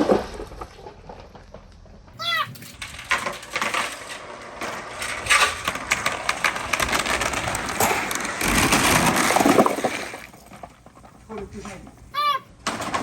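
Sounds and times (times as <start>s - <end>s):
marbles rolling on wooden track: 2.5s - 11.9s.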